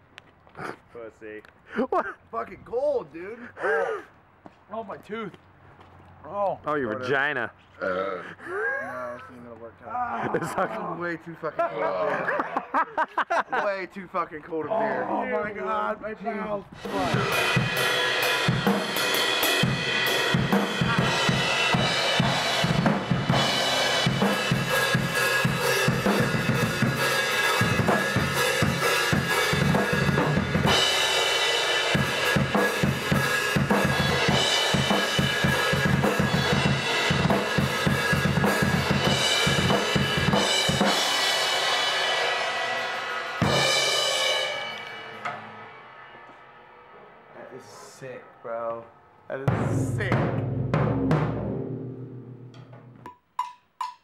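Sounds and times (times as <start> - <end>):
cymbals washing: 16.8 - 48.6
crash cymbal ringing: 41.1 - 49.0.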